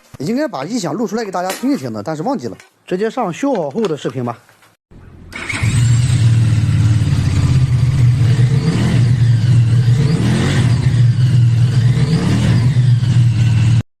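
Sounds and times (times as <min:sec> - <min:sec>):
motorcycle engine running: 0:05.0 - 0:13.8.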